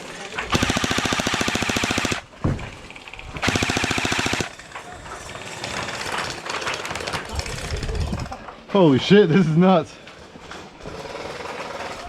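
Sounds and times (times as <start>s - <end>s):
gel blaster firing on full auto: 0.5s - 2.3s, 3.4s - 4.6s.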